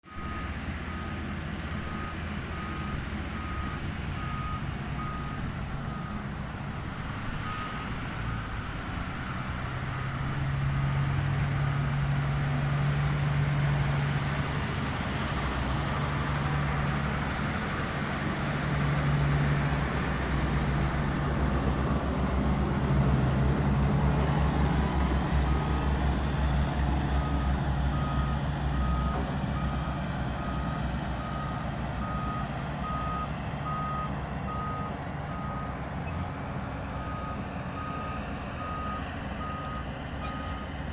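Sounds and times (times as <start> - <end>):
diesel engine droning: 0.0 - 40.9
reversing alarm beeping: 0.1 - 12.2, 27.1 - 40.9.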